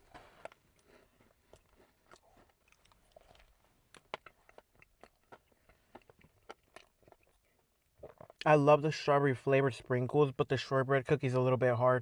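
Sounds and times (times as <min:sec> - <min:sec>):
faint crunchy chewing: 0:00.0 - 0:08.6.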